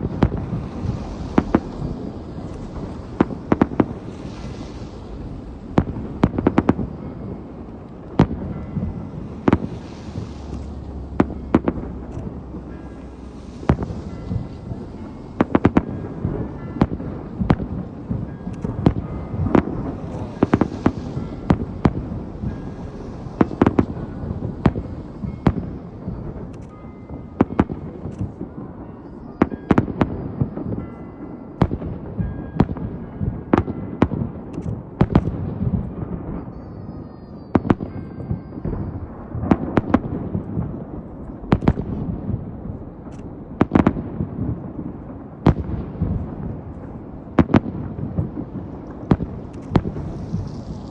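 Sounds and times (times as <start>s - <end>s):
firework shell bursts: 0.0s - 28.5s, 45.5s - 50.9s
low rolling rumble: 0.0s - 29.2s, 38.7s - 50.9s.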